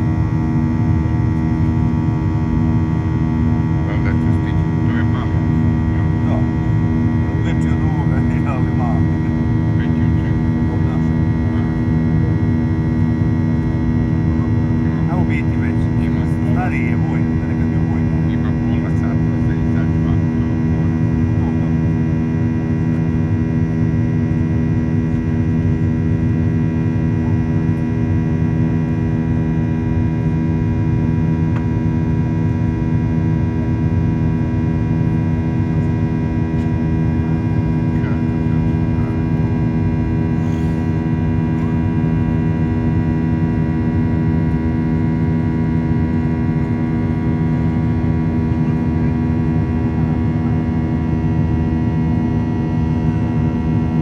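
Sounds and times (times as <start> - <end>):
jet cabin engine drone: 0.0 - 54.0.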